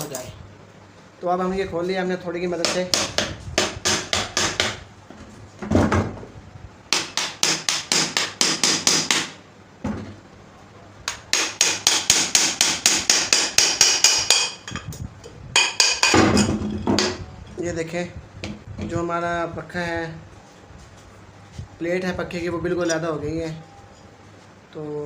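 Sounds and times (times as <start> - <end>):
hammer tapping on metal housing: 11.1 - 14.9, 15.6 - 17.2.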